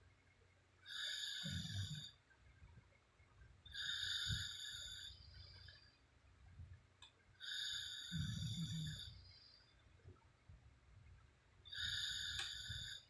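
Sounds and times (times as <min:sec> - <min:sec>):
woman snoring: 0:00.9 - 0:02.1, 0:03.8 - 0:05.1, 0:07.4 - 0:09.2, 0:11.7 - 0:13.0.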